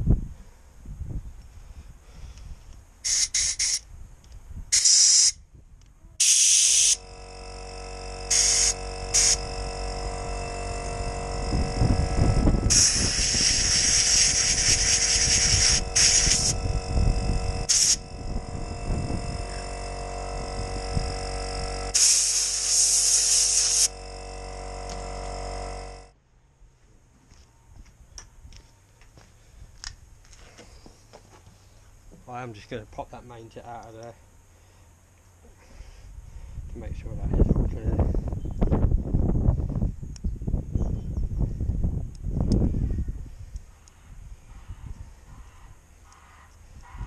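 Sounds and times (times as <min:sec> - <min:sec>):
compressed air blow gun hissing: 0:02.0 - 0:03.9, 0:04.8 - 0:05.4, 0:06.2 - 0:07.2, 0:08.2 - 0:24.1
air compressor humming: 0:03.0 - 0:03.8, 0:06.2 - 0:26.2.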